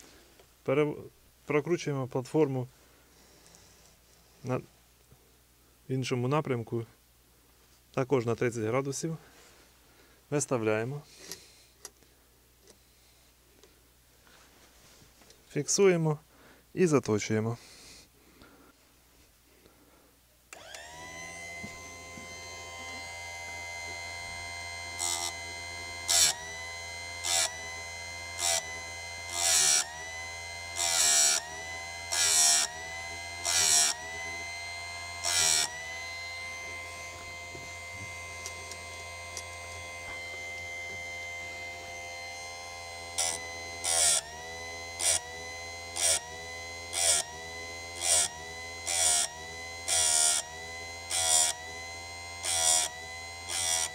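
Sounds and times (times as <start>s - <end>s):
grinder motor whine: 20.5s - 53.9s
grinding disc on chain teeth: 23.8s - 53.9s.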